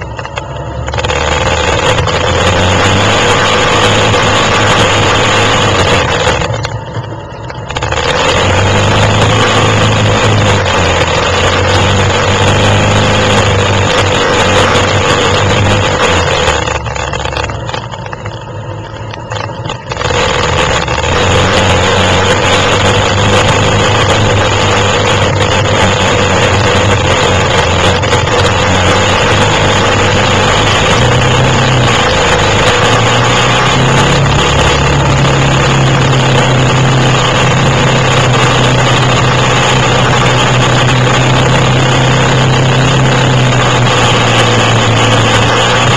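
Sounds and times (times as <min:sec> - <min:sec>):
quad engines revving: 0:00.0 - 0:45.9.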